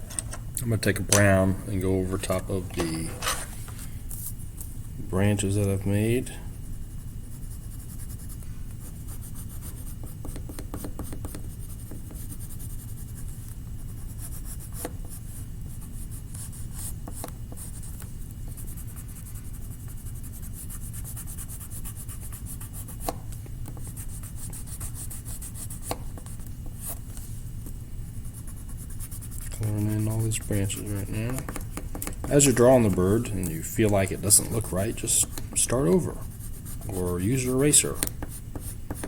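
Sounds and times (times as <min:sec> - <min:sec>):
steady low hum: 0:00.0 - 0:39.0
colouring stick scratching paper: 0:28.3 - 0:39.0.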